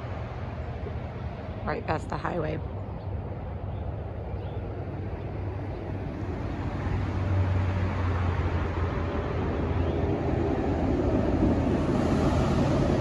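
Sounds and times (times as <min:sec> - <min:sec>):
low outdoor rumble: 0:00.0 - 0:13.0.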